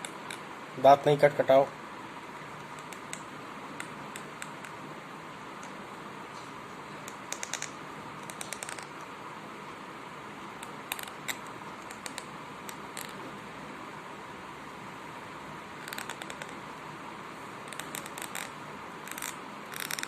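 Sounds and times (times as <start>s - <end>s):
teeth grinding clicks: 7.1s - 9.0s, 10.6s - 12.3s, 15.8s - 16.6s, 17.7s - 18.5s, 19.1s - 20.0s.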